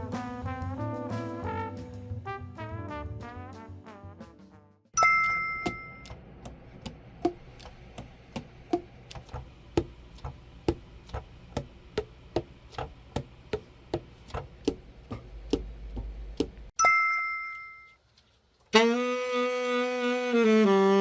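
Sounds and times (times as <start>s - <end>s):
bell-like ding: 5.0s - 6.2s, 16.8s - 18.0s.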